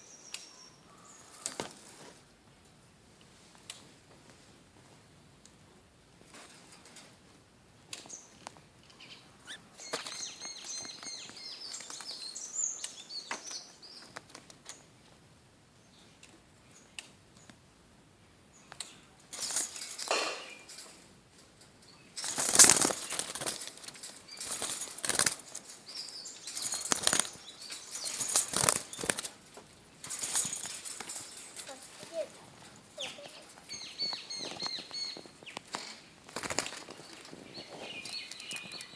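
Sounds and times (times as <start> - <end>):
lovebirds chirping: 8.1 - 14.2, 21.8 - 38.9
wings fluttering: 9.4 - 12.2, 22.1 - 38.9.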